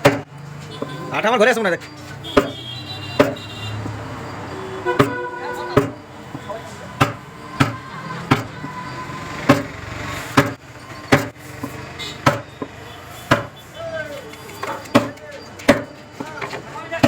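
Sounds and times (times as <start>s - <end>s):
mallet striking wood: 0.0s - 0.3s, 2.3s - 2.6s, 3.2s - 4.0s, 4.9s - 6.4s, 7.0s - 8.8s, 9.5s - 9.7s, 10.3s - 12.5s, 13.3s - 13.5s, 14.9s - 16.4s.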